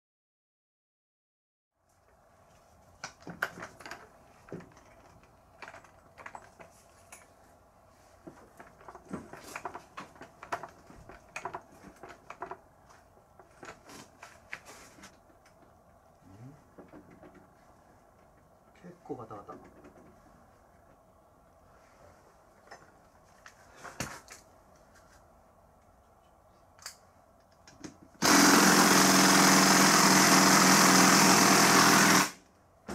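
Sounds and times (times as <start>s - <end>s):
tools clicking and knocking on metal: 16.7s - 17.6s.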